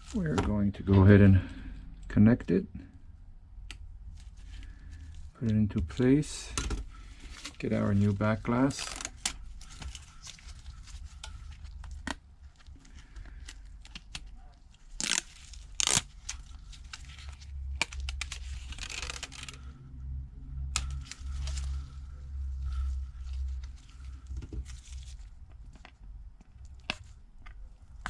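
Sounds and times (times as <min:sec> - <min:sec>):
low steady hum: 0:00.0 - 0:28.0
plastic film peeled and crinkled: 0:07.0 - 0:19.8
sharp plastic rips: 0:07.4 - 0:19.8.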